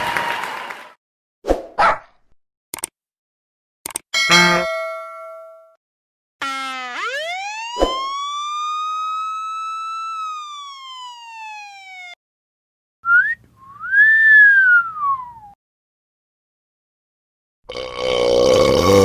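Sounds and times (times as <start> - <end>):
click: 2.7 - 2.9, 3.8 - 4.0
buzzy tone sweeping up: 6.4 - 12.2
low buzz: 6.4 - 12.2
whistle-like tone rising and falling: 6.4 - 12.2, 13.1 - 15.6
quick rising chirp: 13.1 - 15.6.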